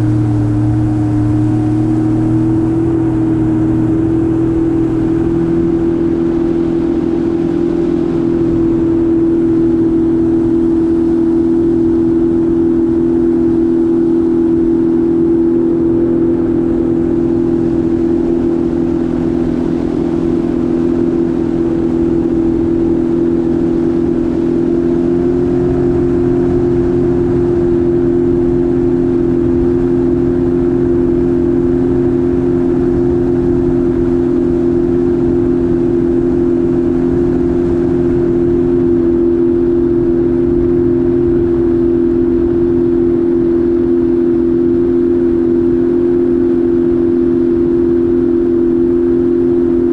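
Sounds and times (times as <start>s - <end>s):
jet ski engine drone: 0.0s - 49.9s
rushing water: 0.0s - 49.9s.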